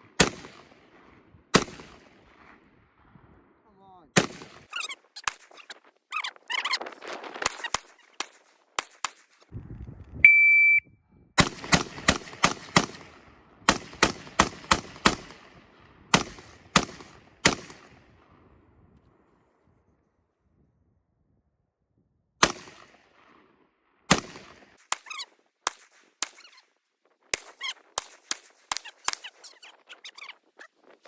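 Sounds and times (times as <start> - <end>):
gunshots: 0.0 - 2.7, 4.1 - 5.7, 11.4 - 18.2, 22.4 - 23.5, 24.1 - 26.7, 27.3 - 29.8
shot timer beep: 10.2 - 10.8.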